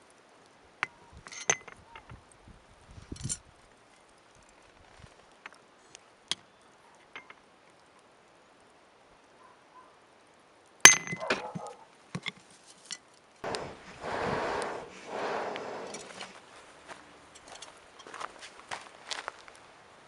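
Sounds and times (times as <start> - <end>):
light metallic clinks: 6.3 - 7.5
rushing noise: 13.4 - 16.4.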